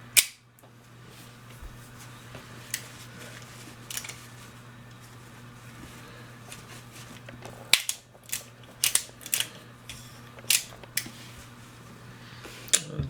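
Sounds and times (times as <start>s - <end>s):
revolver cylinder clicking: 0.1s - 0.6s, 7.2s - 11.2s.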